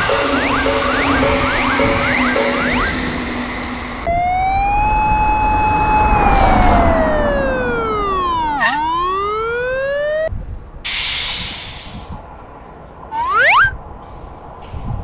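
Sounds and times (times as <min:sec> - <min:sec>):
horn-like electronic tone gliding: 0:00.0 - 0:10.3
electronic ringing with rising chirps: 0:04.0 - 0:10.3, 0:13.1 - 0:13.7
rushing noise: 0:10.9 - 0:12.2.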